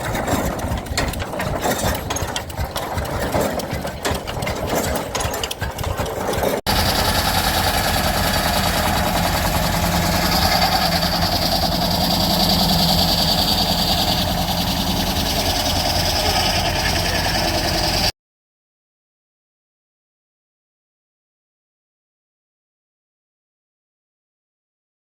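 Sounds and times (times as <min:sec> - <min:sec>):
tractor engine running: 0:00.0 - 0:18.1.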